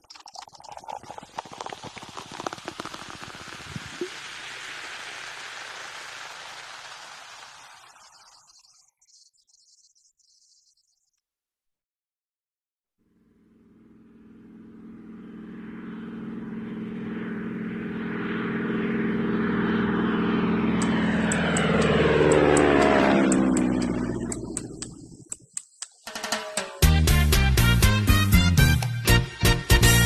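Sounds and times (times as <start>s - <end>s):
vehicle passing by: 13.6s - 25.1s
light ticks: 20.8s - 26.0s.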